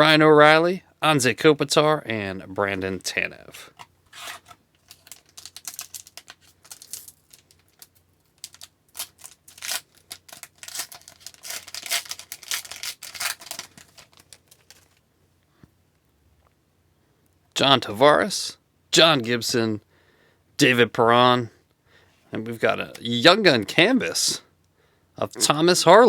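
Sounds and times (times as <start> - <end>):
trading cards flipped by hand: 4.1 - 15.0.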